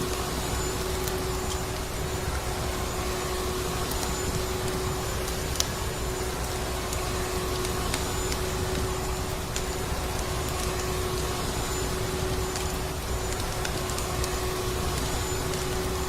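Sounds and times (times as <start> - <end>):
wood fire crackles: 0.0 - 16.0.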